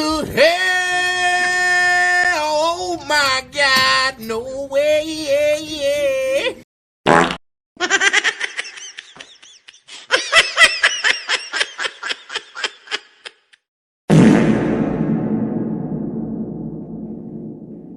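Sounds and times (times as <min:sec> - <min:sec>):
cartoonish rapid laughter: 0:07.8 - 0:13.5
loud booming hit: 0:14.1 - 0:17.9.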